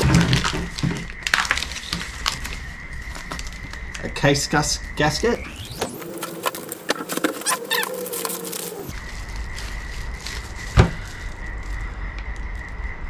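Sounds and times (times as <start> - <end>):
packaging crinkling: 0.0 - 3.8, 5.9 - 11.8.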